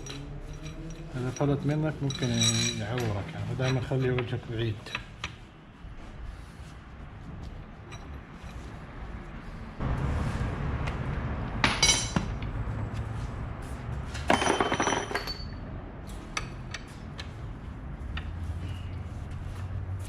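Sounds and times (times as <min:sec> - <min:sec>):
metal clinking and rattling: 0:00.0 - 0:04.2, 0:11.6 - 0:12.3, 0:14.3 - 0:15.6.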